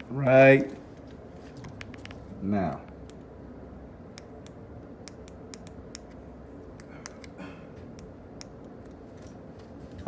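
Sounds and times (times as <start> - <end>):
steady low rumble: 0.0 - 10.0
irregular small clicks: 4.1 - 9.0.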